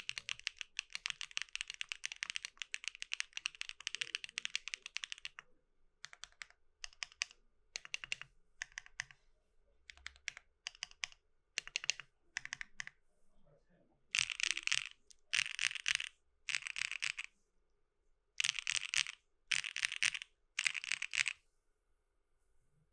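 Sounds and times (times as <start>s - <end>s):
mechanical keyboard typing: 0.0s - 5.4s, 6.0s - 9.2s, 9.9s - 12.9s, 14.1s - 17.3s, 18.4s - 21.4s.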